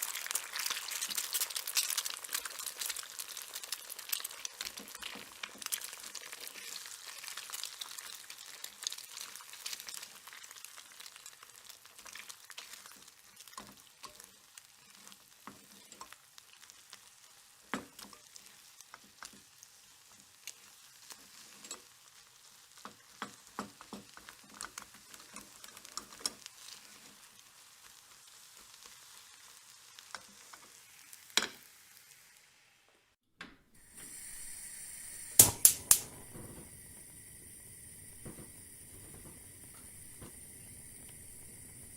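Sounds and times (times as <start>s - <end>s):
eggs frying sizzle: 0.0s - 33.1s, 33.7s - 41.9s
crackling pops: 35.2s - 41.9s.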